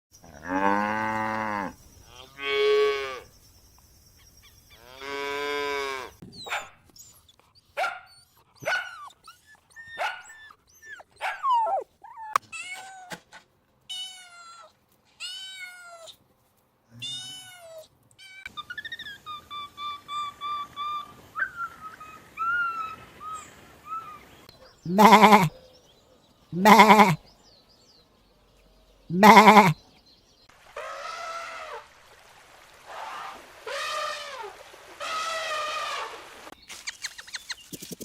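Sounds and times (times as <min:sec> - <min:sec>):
cat meowing: 0:24.9 - 0:25.5, 0:26.6 - 0:27.2, 0:29.1 - 0:29.8
cows mooing: 0:24.9 - 0:25.5, 0:26.6 - 0:27.2, 0:29.1 - 0:29.8
short falling yelps: 0:24.9 - 0:25.5, 0:26.6 - 0:27.2, 0:29.1 - 0:29.8.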